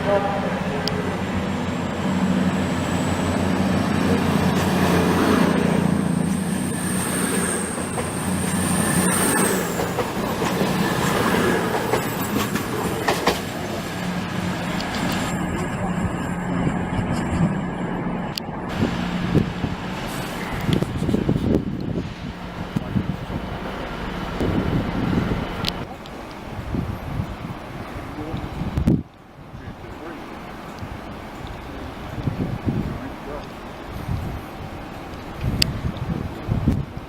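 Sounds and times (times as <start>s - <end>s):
train low hum: 0.0s - 37.0s
high-pitched wheel squeal: 4.6s - 13.0s
wheels clicking over rail joints: 7.8s - 15.3s.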